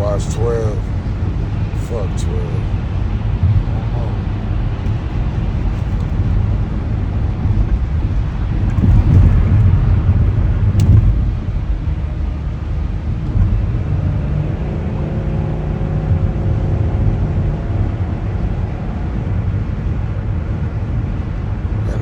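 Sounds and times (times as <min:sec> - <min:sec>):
car cabin road and engine noise: 0:00.0 - 0:22.0.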